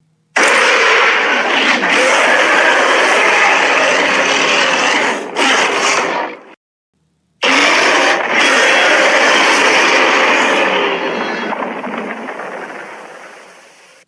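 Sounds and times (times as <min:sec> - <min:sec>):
processed monster roars: 0:00.4 - 0:06.5, 0:07.4 - 0:13.9.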